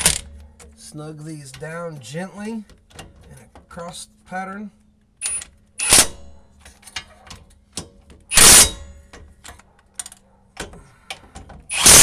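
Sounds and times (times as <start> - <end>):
ratchet clicking: 11.7 - 12.0.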